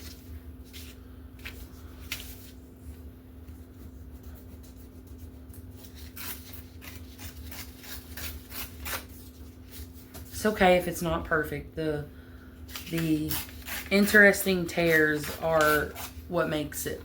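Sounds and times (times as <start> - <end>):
paper ripping: 4.6 - 10.3, 12.7 - 16.2.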